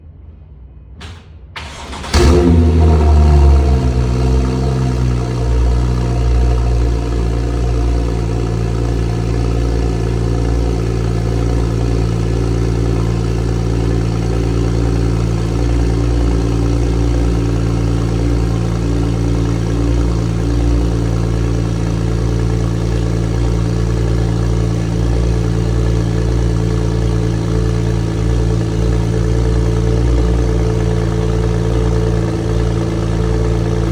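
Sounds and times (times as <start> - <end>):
car engine starting and idling: 1.0 - 33.9.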